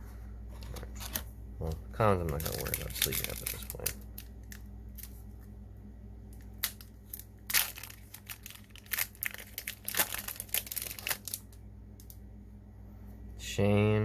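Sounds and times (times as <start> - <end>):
foil wrapper crinkling and tearing: 2.1 - 5.2, 6.4 - 12.1.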